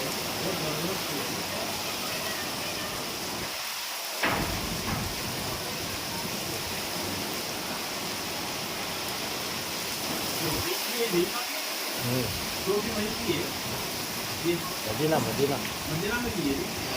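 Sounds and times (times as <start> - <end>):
rain falling: 0.0 - 16.9
sharp knock: 4.2 - 5.4.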